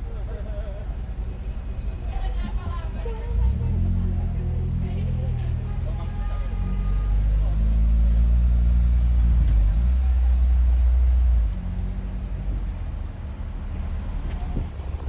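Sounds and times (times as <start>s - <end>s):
car exhaust rumbling: 4.9s - 15.0s.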